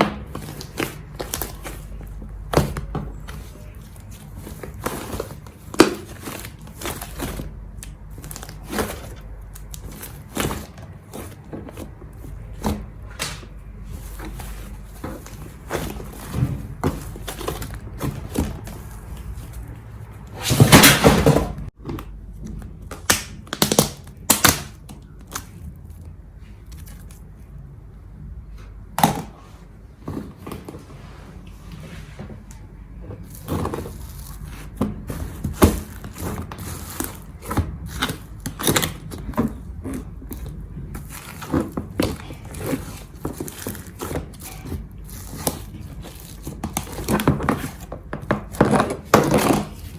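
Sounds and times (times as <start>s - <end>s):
slime squelching: 0.0s - 21.8s, 32.9s - 49.9s.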